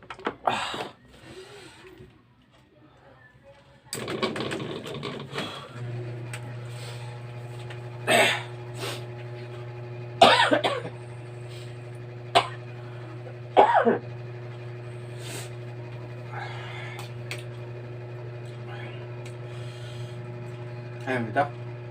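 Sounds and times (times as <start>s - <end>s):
steady low hum: 5.3s - 21.9s
person coughing: 8.0s - 9.0s, 10.2s - 11.0s, 12.3s - 12.6s, 13.6s - 14.0s.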